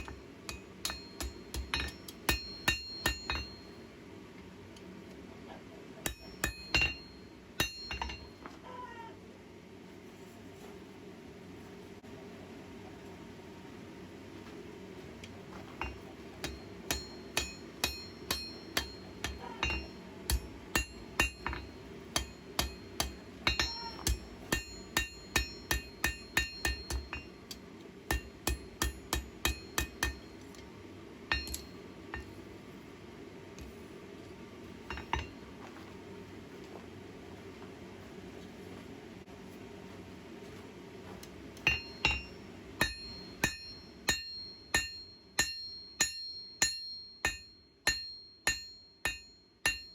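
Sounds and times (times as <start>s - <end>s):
hammer striking metal on anvil: 0.0s - 3.8s, 6.0s - 8.4s, 15.8s - 30.5s, 31.3s - 32.4s, 34.9s - 35.4s, 41.6s - 49.9s.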